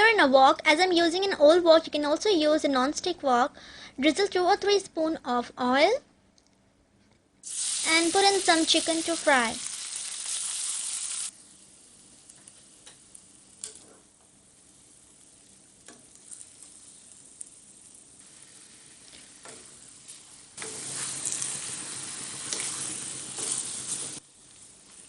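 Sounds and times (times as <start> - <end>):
chicken sizzling in oil: 7.4 - 13.8, 14.4 - 25.0.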